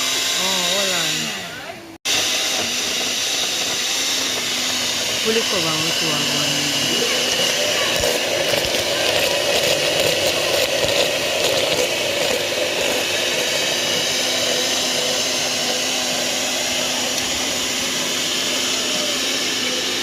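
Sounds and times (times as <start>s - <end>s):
electric blender motor running: 0.0s - 20.0s.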